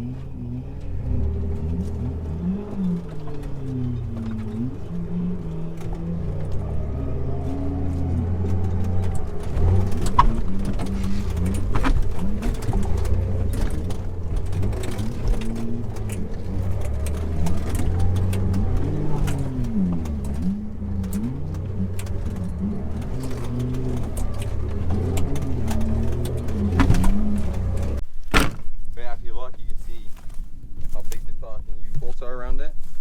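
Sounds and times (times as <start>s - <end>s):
off-road vehicle engine revving: 0.0s - 28.0s
sharp knocks: 23.3s - 28.7s.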